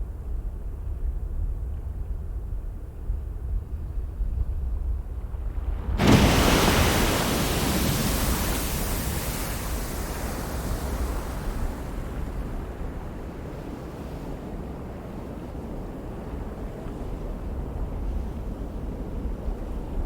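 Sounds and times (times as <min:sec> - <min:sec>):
volcano rushing roar: 0:05.7 - 0:12.7.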